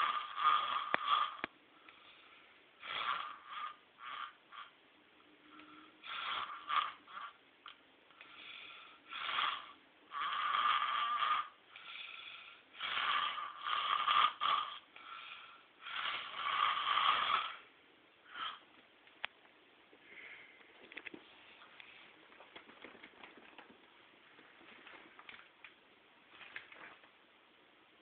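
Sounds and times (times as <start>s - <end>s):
person snoring loudly: 0.0s - 4.7s, 5.6s - 7.4s, 8.4s - 17.7s.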